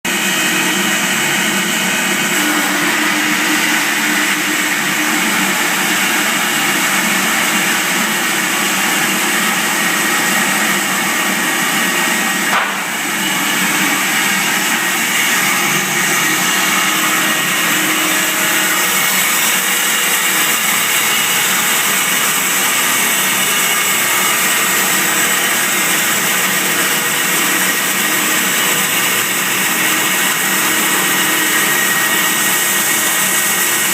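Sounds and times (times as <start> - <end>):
band sawmill sawing timber: 0.1 - 33.9
short knock: 12.5 - 13.0.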